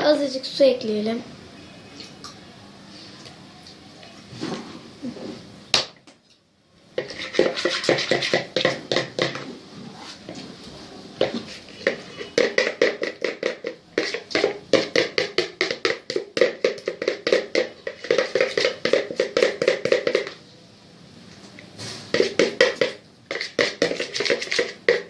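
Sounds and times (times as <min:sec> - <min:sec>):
spoon stirring slime in a bowl: 0:07.0 - 0:20.4, 0:22.1 - 0:25.0.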